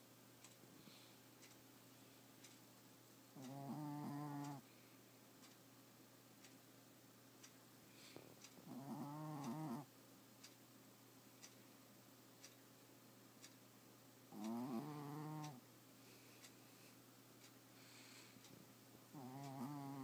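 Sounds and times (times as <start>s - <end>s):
faint clock ticking: 0.0s - 20.0s
pet snoring: 3.4s - 4.6s, 8.6s - 9.9s, 14.3s - 15.6s, 19.1s - 20.0s.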